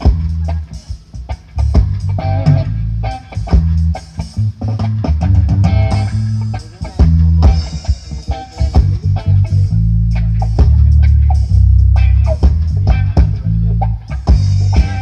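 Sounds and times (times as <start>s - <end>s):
booming bass: 0.0s - 15.0s
loud band music: 0.0s - 15.0s
drum hits: 3.4s - 9.7s, 14.1s - 15.0s.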